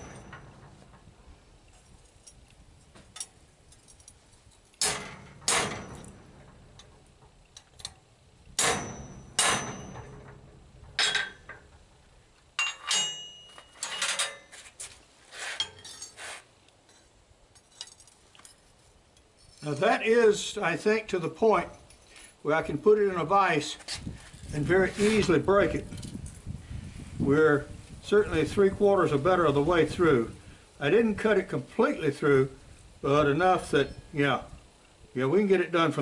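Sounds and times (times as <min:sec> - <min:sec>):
hammer striking steel on anvil: 0:04.8 - 0:06.2, 0:08.6 - 0:10.3, 0:12.6 - 0:13.5.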